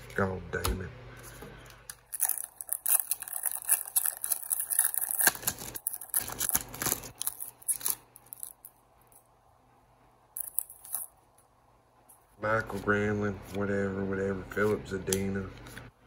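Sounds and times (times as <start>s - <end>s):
foil wrapper tearing and crinkling: 2.0s - 8.7s.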